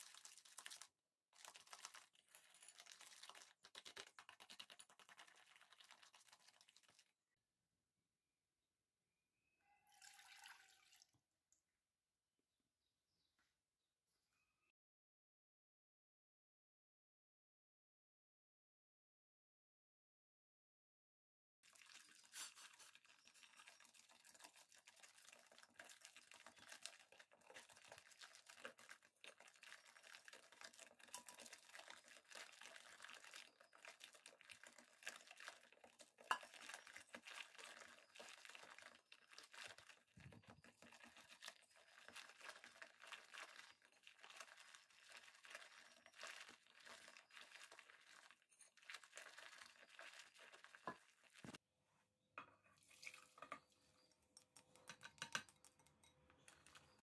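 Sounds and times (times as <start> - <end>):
faint crinkling and rustling: 21.6 - 51.6.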